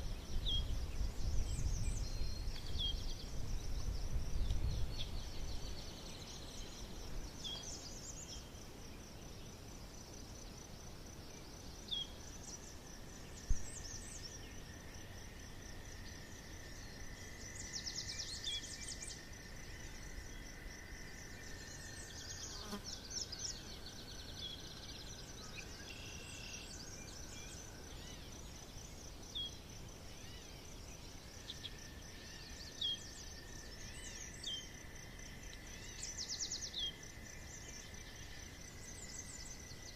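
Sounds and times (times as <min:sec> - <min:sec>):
insect trill: 0:00.0 - 0:39.9
bird chirps and birdsong: 0:00.2 - 0:08.5, 0:35.7 - 0:38.0.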